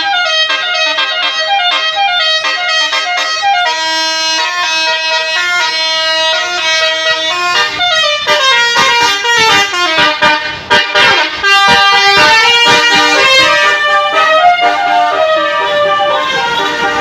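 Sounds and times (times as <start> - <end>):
musical air horn playing a tune: 0.0 - 17.0
passing vehicle noise: 1.8 - 17.0.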